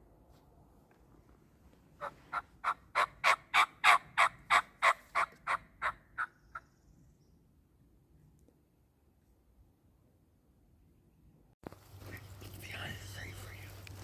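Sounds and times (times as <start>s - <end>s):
turkey yelps: 2.0s - 6.3s.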